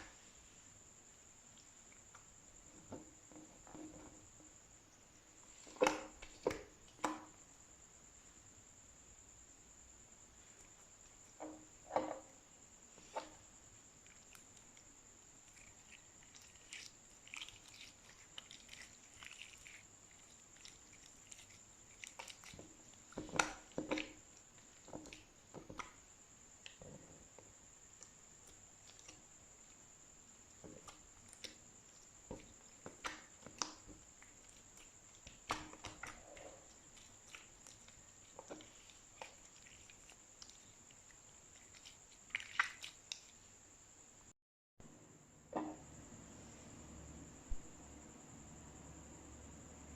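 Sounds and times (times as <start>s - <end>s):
slime squelching: 14.0s - 29.8s, 30.4s - 43.4s.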